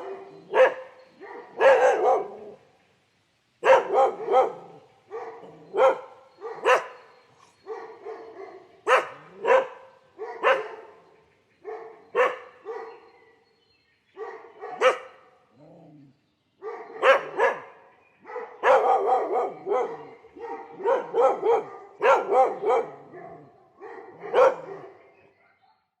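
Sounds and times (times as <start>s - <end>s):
dog barking: 0.0s - 2.6s, 3.6s - 11.0s, 11.6s - 13.4s, 14.2s - 15.3s, 16.6s - 26.0s.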